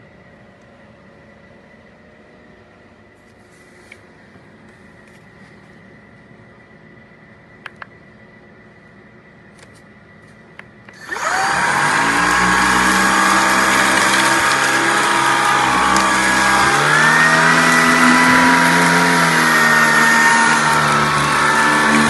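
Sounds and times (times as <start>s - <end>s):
vacuum cleaner motor running: 10.9s - 22.0s.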